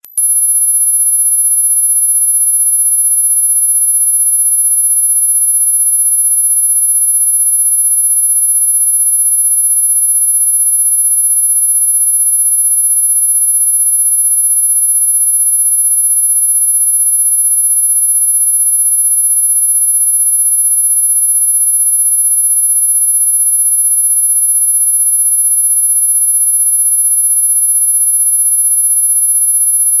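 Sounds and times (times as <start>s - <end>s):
high-pitched pure tone: 0.0s - 0.4s.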